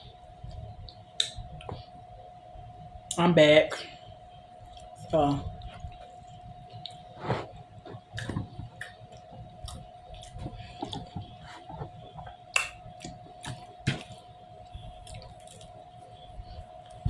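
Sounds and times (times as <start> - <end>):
faint steady hum: 0.0 - 17.0
person chewing food: 4.6 - 17.0.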